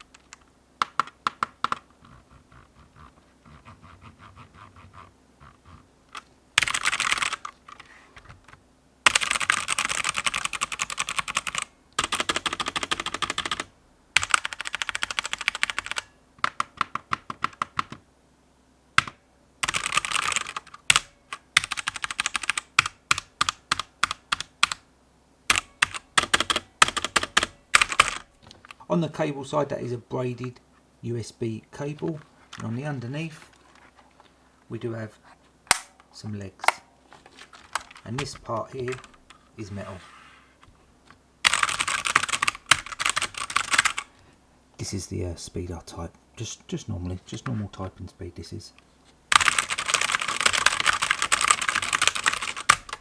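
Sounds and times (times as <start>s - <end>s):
mechanical keyboard typing: 0.0s - 7.8s, 9.1s - 18.0s, 19.0s - 24.8s, 25.5s - 28.3s, 37.6s - 39.2s, 41.4s - 44.1s, 49.3s - 53.0s.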